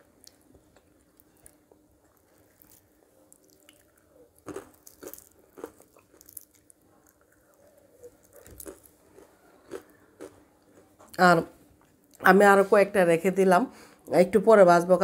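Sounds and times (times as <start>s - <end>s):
person chewing crispy food: 0.0s - 11.2s.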